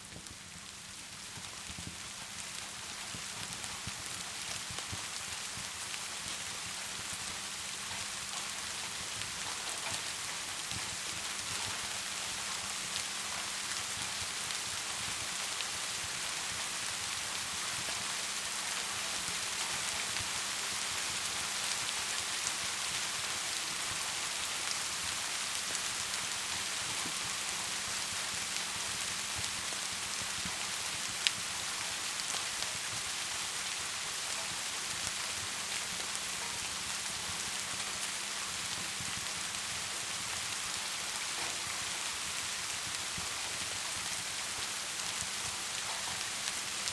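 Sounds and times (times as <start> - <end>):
log fire crackling: 0.0 - 46.9
rain hissing: 0.0 - 46.9.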